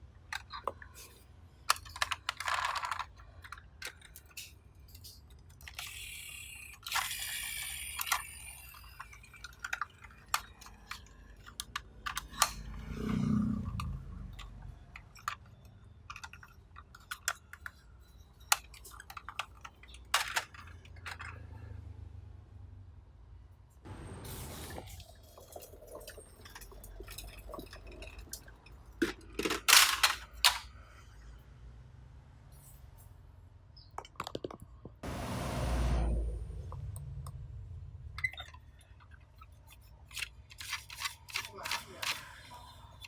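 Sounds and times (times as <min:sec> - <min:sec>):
plastic toy clicks and knocks: 0:00.3 - 0:21.5, 0:26.5 - 0:30.8, 0:33.8 - 0:35.0, 0:38.2 - 0:43.0
short low hum: 0:35.0 - 0:38.2.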